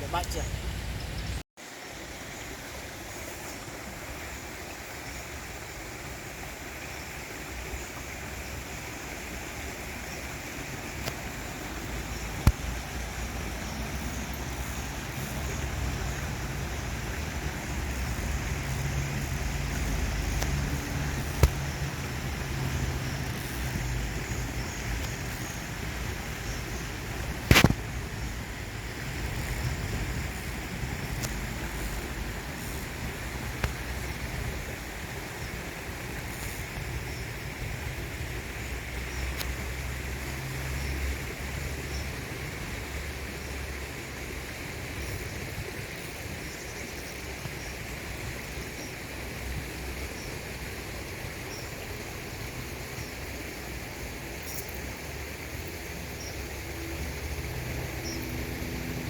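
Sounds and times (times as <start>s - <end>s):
outdoor rumble and hiss: 0.0s - 59.0s
sharp clicks: 20.2s - 22.1s, 27.4s - 28.0s.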